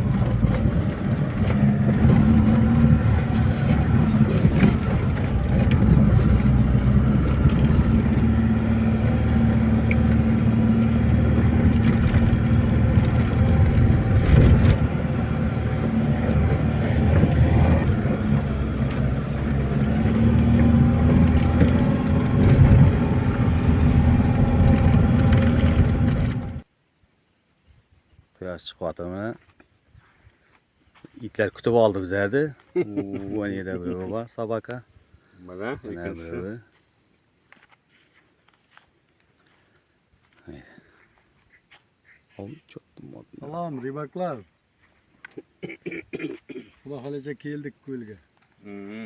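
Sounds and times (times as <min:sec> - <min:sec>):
car engine running: 0:00.0 - 0:26.6.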